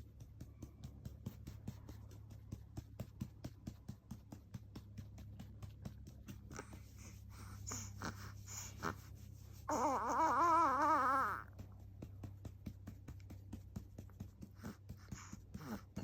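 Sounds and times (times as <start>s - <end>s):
baby grunting and fussing: 7.6s - 9.1s, 9.7s - 11.5s, 15.5s - 16.0s
baby whining: 9.7s - 11.5s.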